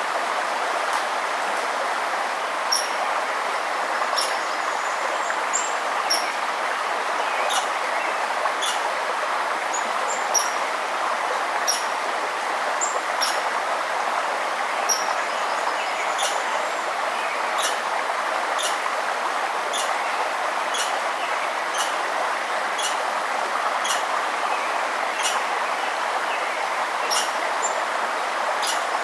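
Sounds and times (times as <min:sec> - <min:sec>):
river water flowing: 0:00.0 - 0:29.0
songbird chirping: 0:19.7 - 0:22.0, 0:23.8 - 0:27.8.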